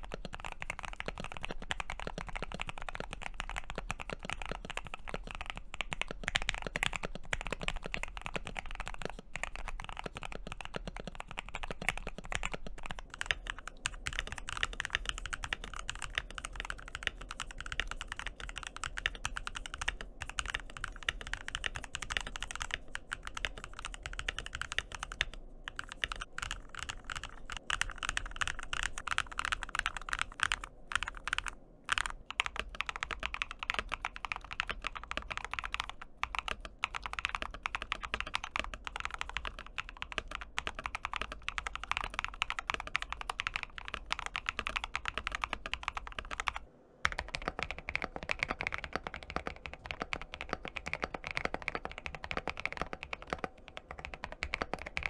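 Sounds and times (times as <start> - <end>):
typing on mechanical keyboard: 0.0 - 55.0.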